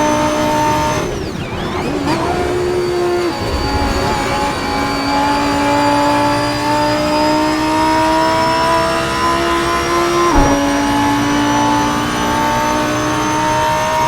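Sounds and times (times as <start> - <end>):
car engine revving at full throttle: 0.1 - 14.0
gear upshift: 10.2 - 11.6.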